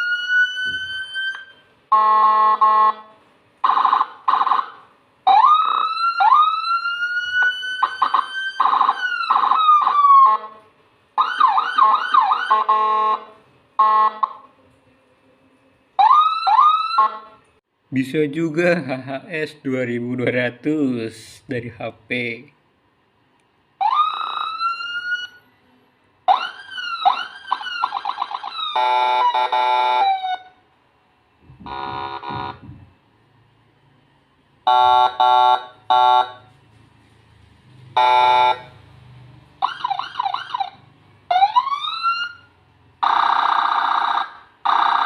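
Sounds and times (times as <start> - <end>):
siren yelp sweeps: 0.0 - 3.0, 3.6 - 10.6, 11.2 - 14.4, 16.0 - 17.4, 23.8 - 25.5, 26.3 - 30.6, 31.5 - 32.9, 37.7 - 45.0
siren horn blasts: 0.0 - 4.5, 11.6 - 14.5, 28.6 - 30.6, 31.5 - 32.9, 34.6 - 36.5, 37.9 - 38.9
rising siren wails: 0.0 - 10.6, 11.2 - 14.5, 16.0 - 17.4, 23.8 - 25.5, 26.3 - 30.6, 31.4 - 33.9, 37.6 - 45.0.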